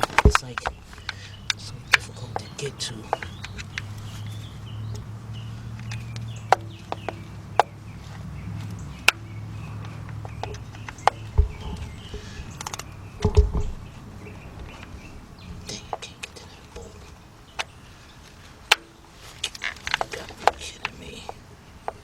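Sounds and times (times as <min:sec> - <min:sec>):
heavier thumps: 0:00.0 - 0:02.0, 0:09.0 - 0:16.1
faint bird chirps: 0:00.0 - 0:22.0
steady low hum: 0:00.0 - 0:22.0
ratchet metallic clicks and knocks: 0:09.0 - 0:17.7.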